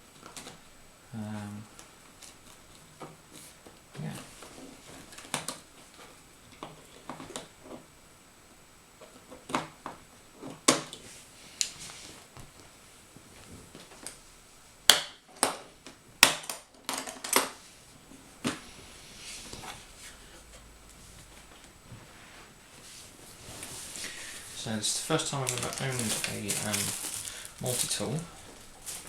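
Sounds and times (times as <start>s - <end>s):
packaging rustling: 23.1s - 29.0s.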